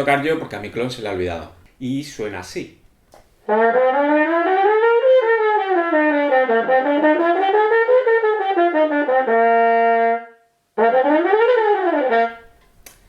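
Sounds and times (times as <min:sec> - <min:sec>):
muted trumpet: 0:03.5 - 0:12.5.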